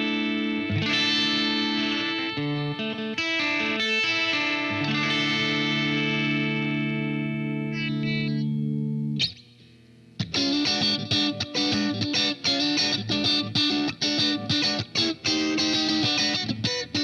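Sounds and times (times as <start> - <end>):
choppy distorted guitar riff: 0.0 - 17.0
distorted guitar chord ringing: 0.0 - 17.0.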